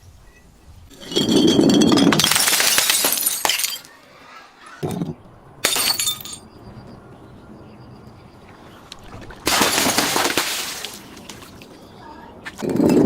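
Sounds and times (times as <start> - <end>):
glass bottle smashing: 0.9 - 3.9, 5.6 - 6.4, 9.5 - 10.8.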